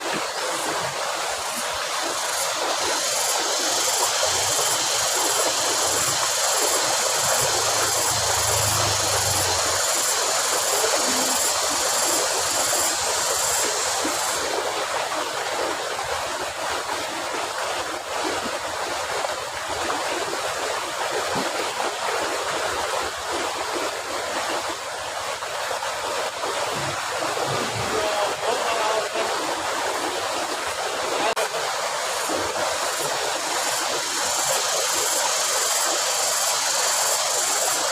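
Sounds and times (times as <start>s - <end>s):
water rushing through a channel: 0.0s - 37.9s
high hiss: 0.1s - 15.2s, 27.9s - 37.9s.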